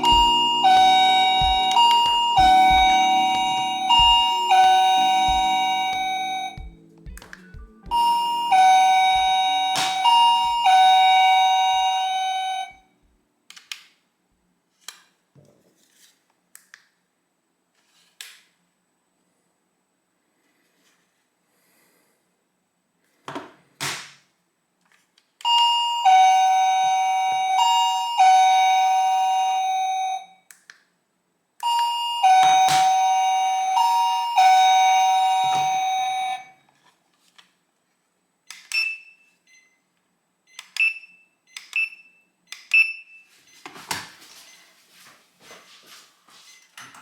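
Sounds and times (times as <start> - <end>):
short high beeps with clicks: 0.0 - 6.7
doorbell chime tune: 0.0 - 6.8, 7.9 - 12.8, 25.5 - 30.4, 31.6 - 36.6.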